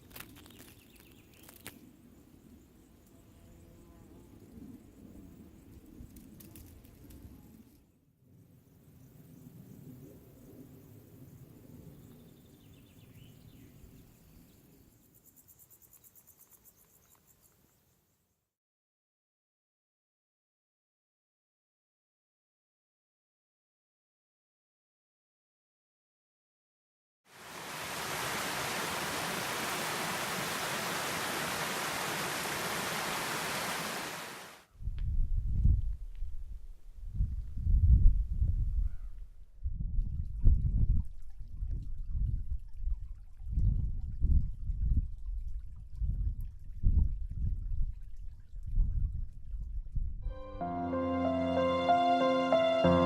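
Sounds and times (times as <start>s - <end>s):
mountain creek rushing: 27.3s - 34.6s.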